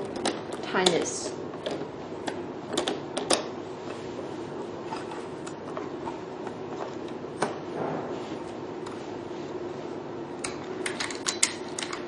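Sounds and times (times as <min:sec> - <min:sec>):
hard parts clicking and knocking: 0:00.0 - 0:03.5, 0:10.4 - 0:12.0
steady low hum: 0:00.0 - 0:12.0.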